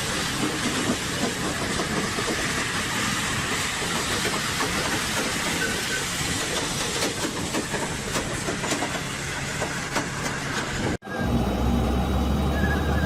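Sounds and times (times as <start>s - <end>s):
moving vehicle rush: 9.9s - 13.0s.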